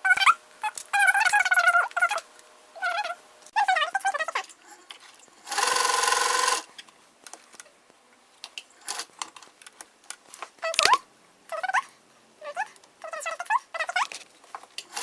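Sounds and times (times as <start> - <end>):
sewing machine running: 5.5 - 6.7.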